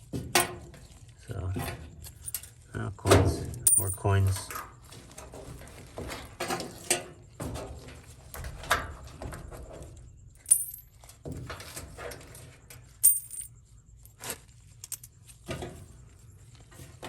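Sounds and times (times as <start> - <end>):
coins clinking and rattling: 2.0 - 2.6, 3.5 - 4.7, 10.4 - 11.2, 12.8 - 15.3.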